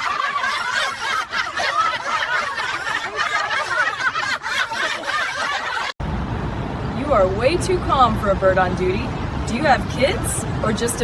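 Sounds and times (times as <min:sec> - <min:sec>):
people laughing and snickering: 0:00.0 - 0:06.0.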